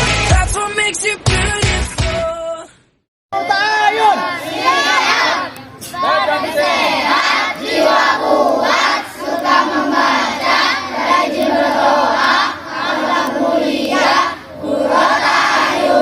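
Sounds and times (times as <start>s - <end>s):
children shouting: 3.4s - 16.0s
children singing: 4.1s - 16.0s.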